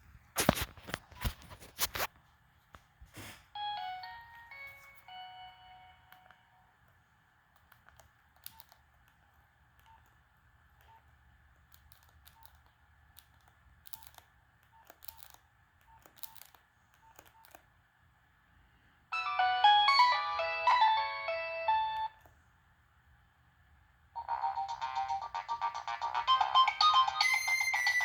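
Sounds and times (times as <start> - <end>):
phone ringtone melody: 3.6 - 6.5, 19.1 - 22.2, 24.2 - 28.0.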